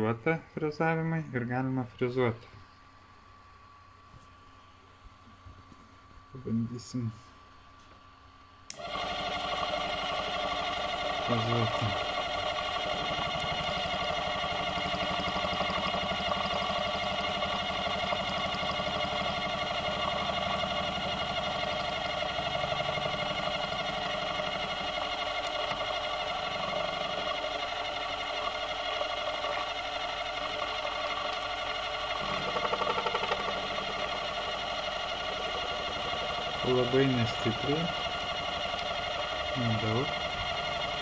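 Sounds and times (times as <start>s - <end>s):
milling machine motor whine: 8.7s - 41.0s.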